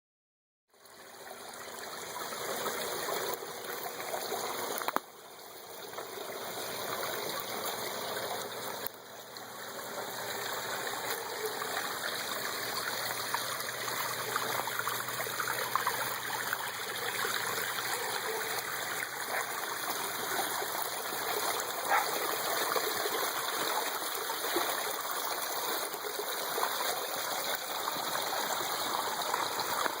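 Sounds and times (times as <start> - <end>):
water splashing down small waterfalls: 14.2 - 30.0.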